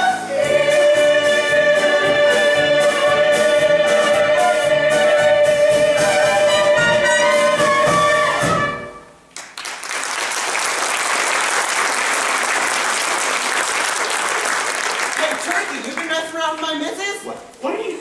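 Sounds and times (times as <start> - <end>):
stage musical song: 0.0 - 15.2
audience applause: 9.4 - 16.2.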